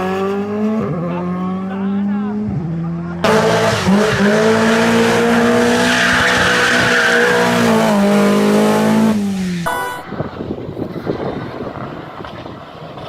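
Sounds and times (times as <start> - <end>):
rally car engine at high revs: 0.0 - 9.9.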